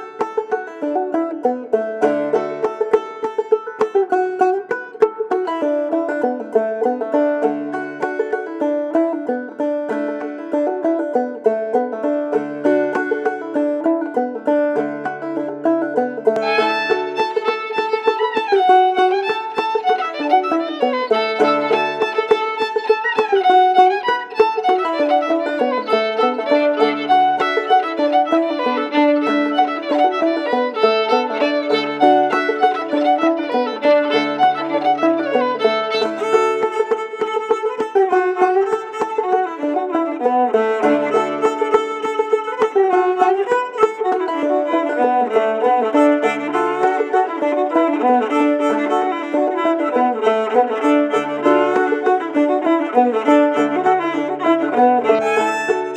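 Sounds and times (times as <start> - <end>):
clawhammer banjo: 0.0 - 55.9
fiddle melody: 0.0 - 55.9.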